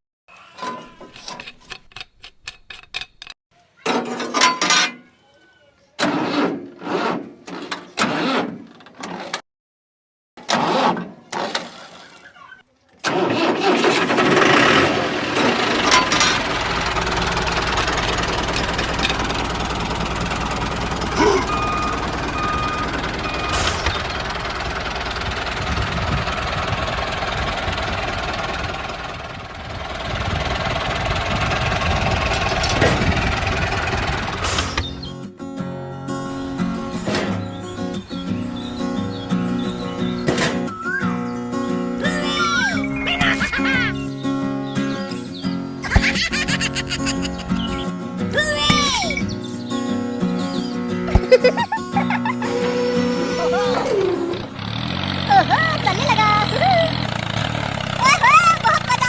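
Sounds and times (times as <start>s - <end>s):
small motor running: 13.2s - 35.0s, 51.4s - 59.0s
guitar music: 34.6s - 57.2s.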